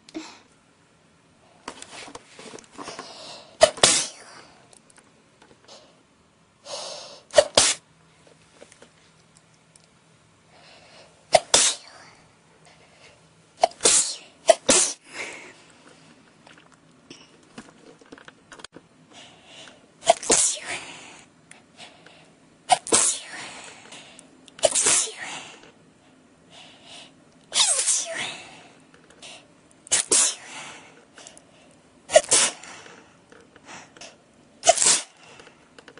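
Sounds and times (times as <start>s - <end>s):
person sneezing: 3.6s - 4.4s, 6.7s - 7.8s, 11.3s - 12.0s, 13.6s - 15.5s, 20.0s - 21.1s, 22.7s - 23.7s, 24.6s - 25.6s, 27.5s - 28.6s, 29.9s - 30.6s, 32.1s - 32.9s, 34.6s - 35.3s.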